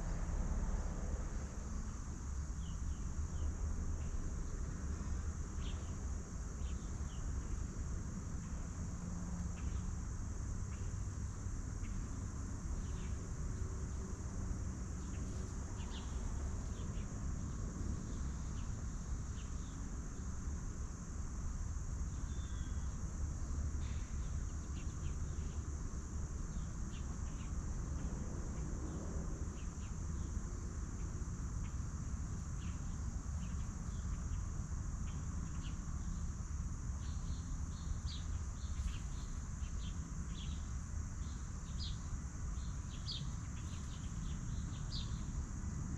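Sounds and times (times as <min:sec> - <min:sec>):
insects droning: 0:00.0 - 0:45.9
low steady rumble: 0:00.0 - 0:45.9.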